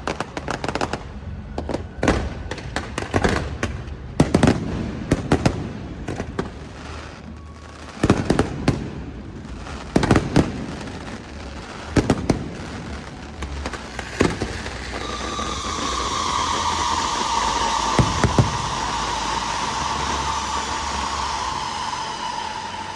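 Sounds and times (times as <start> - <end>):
fireworks bursting: 0.0 - 22.9
background rumble: 9.4 - 22.9
whining hiss: 9.6 - 22.9.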